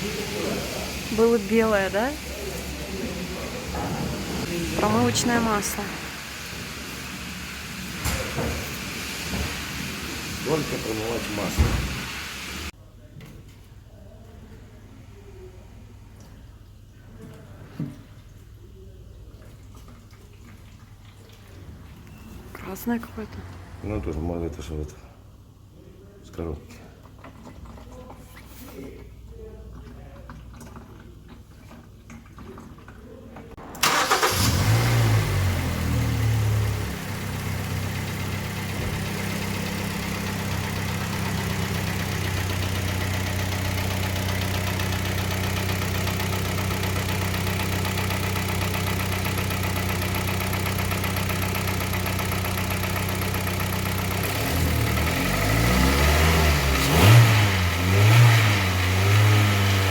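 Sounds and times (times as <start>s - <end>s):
car engine starting and idling: 0.0s - 12.8s, 21.5s - 25.1s, 33.5s - 59.9s
engine revving: 3.4s - 6.6s, 10.4s - 12.7s, 33.6s - 59.9s.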